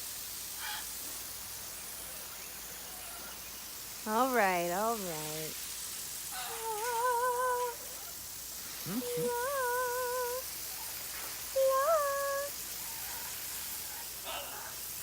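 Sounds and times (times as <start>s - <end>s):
faint steady hiss: 0.0s - 15.0s
hummed notes wavering in pitch: 8.9s - 10.4s.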